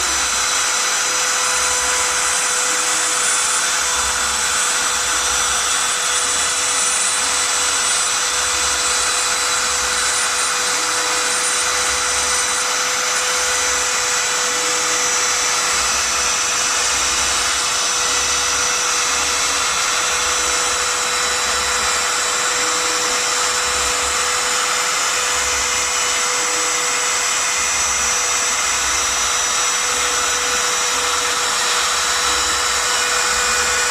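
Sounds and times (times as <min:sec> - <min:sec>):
spindle motor whining: 0:00.0 - 0:33.9.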